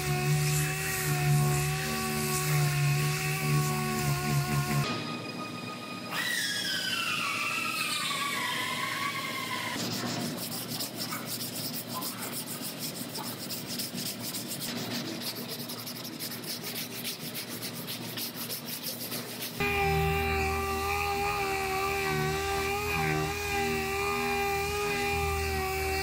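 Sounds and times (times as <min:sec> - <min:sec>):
hand sanding scratching strokes: 0:00.0 - 0:04.8, 0:09.8 - 0:26.0
power tool whine: 0:19.6 - 0:26.0.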